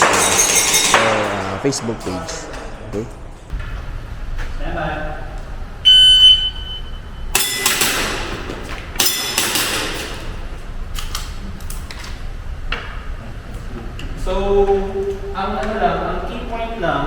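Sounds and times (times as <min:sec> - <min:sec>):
metallic target clangs: 0:00.0 - 0:01.7, 0:07.3 - 0:10.4
shot timer beep: 0:05.9 - 0:07.0.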